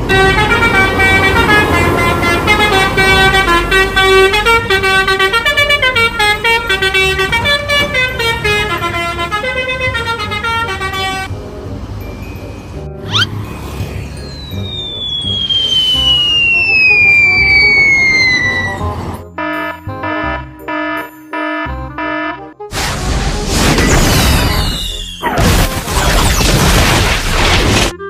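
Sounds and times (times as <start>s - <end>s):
multi-tone air horn melody: 0.0s - 11.3s, 14.7s - 22.7s.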